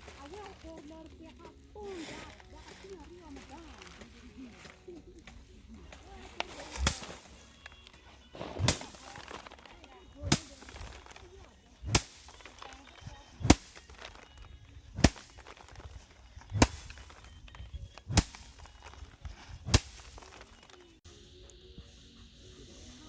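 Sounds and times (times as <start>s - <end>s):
sharp strikes: 6.7s - 7.3s, 8.4s - 9.4s, 10.2s - 11.1s, 11.8s - 12.5s, 13.4s - 14.0s, 15.0s - 15.6s, 16.5s - 17.2s, 18.1s - 18.7s, 19.6s - 20.4s.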